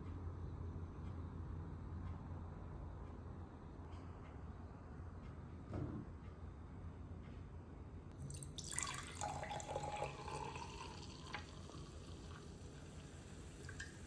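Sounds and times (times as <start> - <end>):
tap water running into sink: 8.2 - 14.0.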